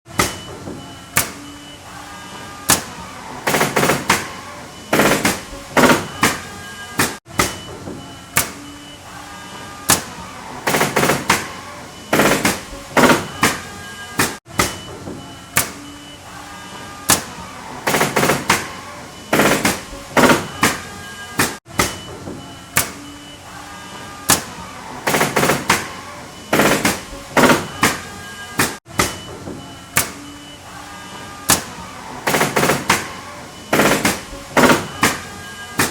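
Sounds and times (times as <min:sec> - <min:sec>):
nail gun shots: 0:02.7 - 0:07.6, 0:09.9 - 0:14.8, 0:15.6 - 0:15.8, 0:17.1 - 0:20.8, 0:22.8 - 0:23.0, 0:24.3 - 0:29.2, 0:31.5 - 0:35.9.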